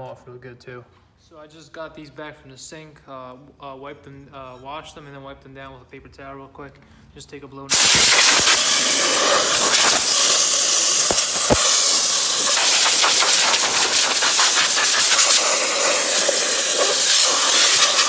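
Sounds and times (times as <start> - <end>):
compressed air hissing: 7.7 - 18.0.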